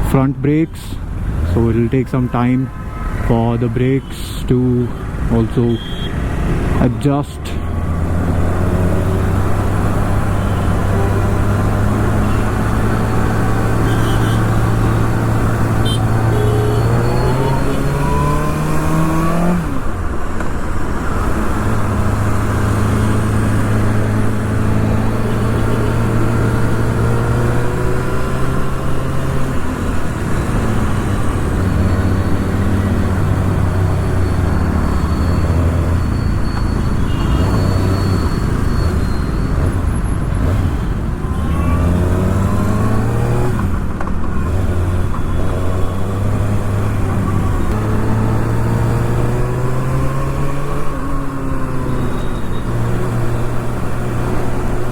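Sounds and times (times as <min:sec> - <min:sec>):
motorcycle engine revving: 0:05.0 - 0:20.1, 0:21.0 - 0:54.9.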